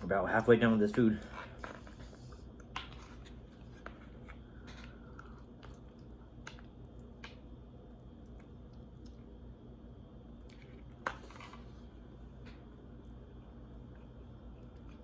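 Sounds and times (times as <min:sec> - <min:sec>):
low steady hum: 0:00.0 - 0:15.0
chewing food: 0:01.6 - 0:09.5.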